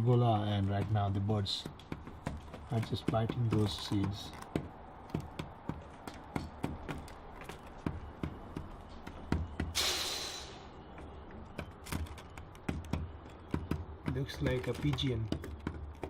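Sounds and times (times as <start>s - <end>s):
birds pecking on a roof: 0.0s - 16.0s
brief rushing hiss: 9.8s - 10.7s.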